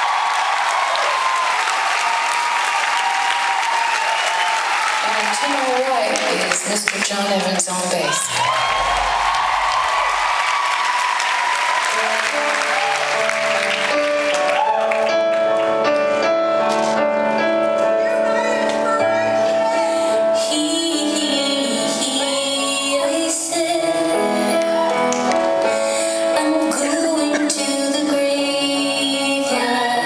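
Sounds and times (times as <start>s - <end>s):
audience applause: 0.0s - 16.2s
keyboard chords: 11.1s - 30.0s
woman singing: 19.6s - 25.2s, 26.0s - 30.0s.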